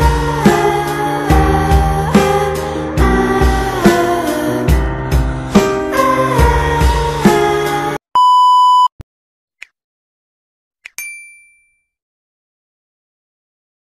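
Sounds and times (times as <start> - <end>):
background music: 0.0 - 8.0
electronic beep: 8.2 - 9.0
bright ding: 10.9 - 12.0.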